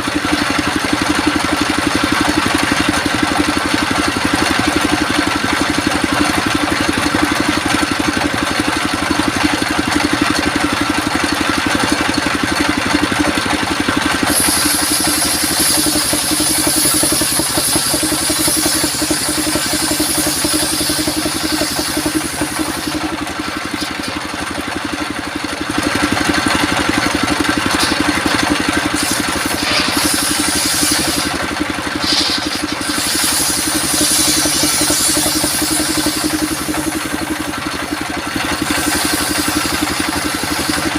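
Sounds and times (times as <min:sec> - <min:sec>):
circular sawmill engine running: 0:00.0 - 0:40.9
saw blade cutting wood hiss: 0:13.9 - 0:24.6, 0:26.2 - 0:40.9.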